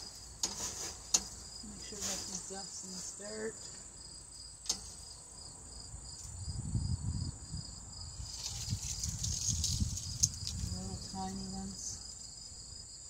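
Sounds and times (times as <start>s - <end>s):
rustling and bumping: 0.0s - 3.2s, 8.2s - 11.4s
insects chirping: 0.0s - 13.0s.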